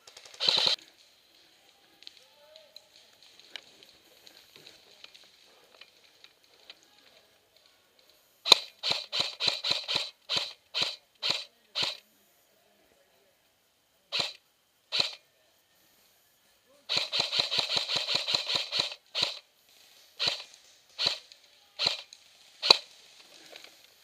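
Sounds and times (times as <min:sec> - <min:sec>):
airsoft gun shots: 0:00.3 - 0:00.8, 0:08.5 - 0:12.0, 0:14.1 - 0:15.2, 0:16.9 - 0:19.4, 0:20.2 - 0:21.2, 0:21.8 - 0:22.9.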